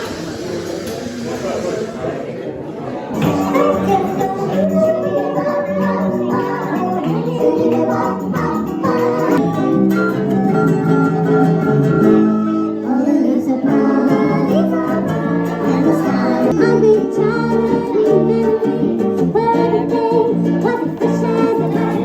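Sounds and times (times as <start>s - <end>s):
strummed guitar: 3.2s - 13.0s
person singing: 3.2s - 22.0s.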